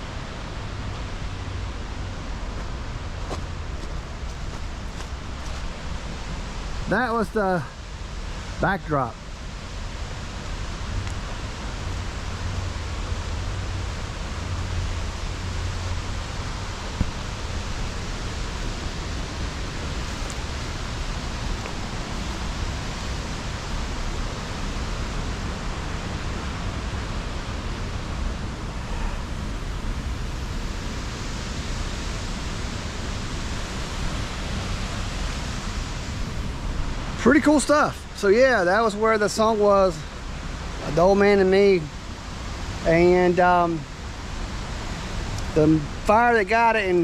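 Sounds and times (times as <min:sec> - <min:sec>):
waterfall rushing: 0:04.8 - 0:41.2.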